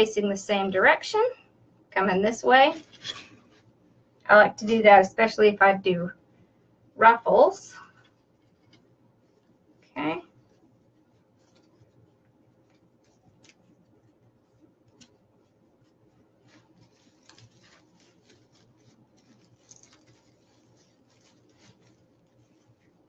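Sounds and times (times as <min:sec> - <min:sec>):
ribbons rustling and crinkling: 0:09.8 - 0:23.0.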